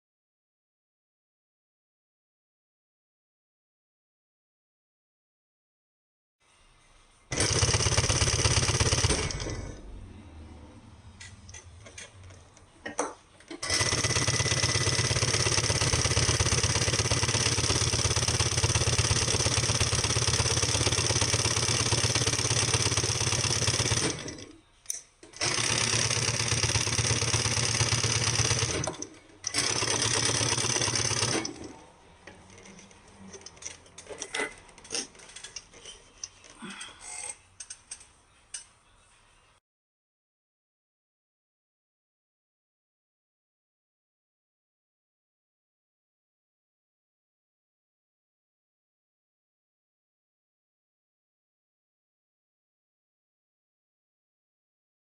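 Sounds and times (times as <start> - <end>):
sewing machine stitching: 7.3 - 9.8, 13.5 - 24.6, 25.3 - 31.8.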